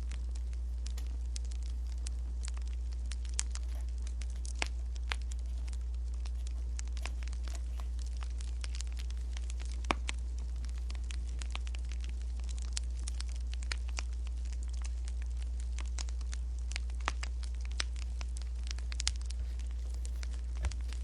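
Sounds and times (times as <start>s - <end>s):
low rumble: 0.0s - 21.0s
wood fire crackling: 0.0s - 21.0s.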